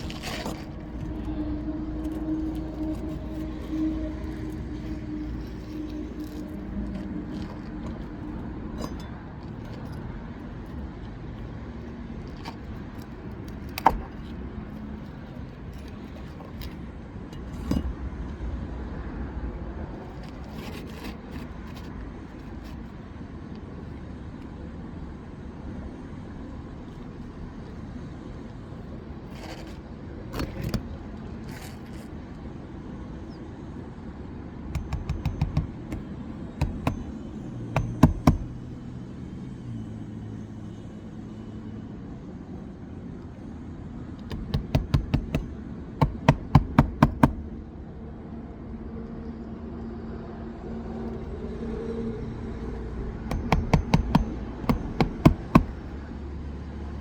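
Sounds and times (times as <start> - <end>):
hammer blows on shingle roof: 34.8 - 38.7, 44.2 - 47.4, 53.3 - 56.1.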